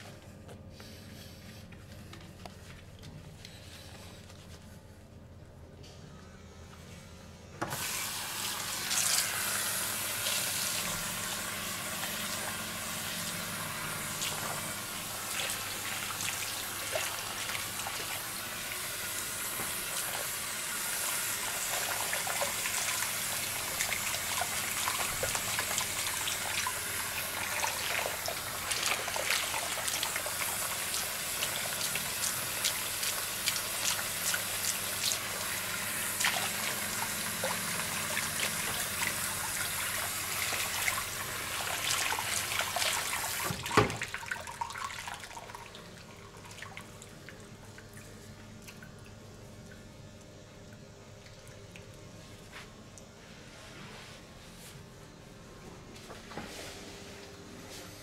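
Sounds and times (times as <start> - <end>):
running water: 7.8 - 49.8.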